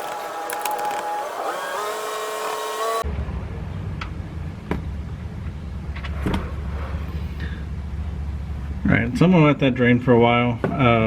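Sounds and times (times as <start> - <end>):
lawn mower engine rumble: 0.0 - 2.3.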